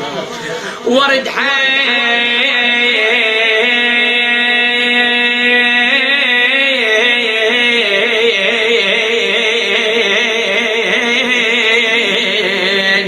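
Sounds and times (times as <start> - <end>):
person singing a long wavering note: 1.0 - 13.0.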